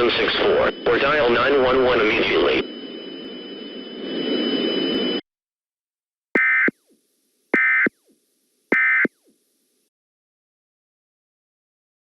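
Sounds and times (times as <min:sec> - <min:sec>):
faint steady high tones: 0:00.0 - 0:05.2
buzzy digital chirps: 0:06.4 - 0:06.7.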